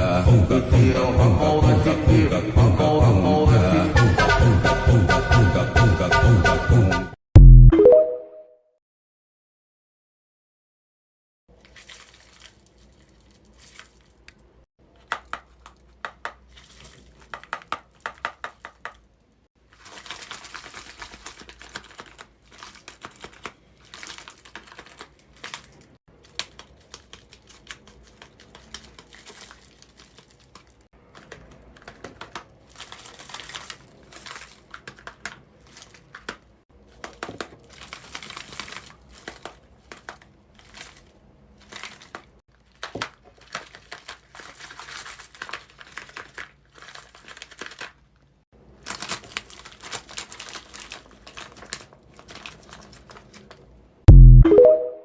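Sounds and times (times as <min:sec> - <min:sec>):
crinkling: 0:11.5 - 0:53.9.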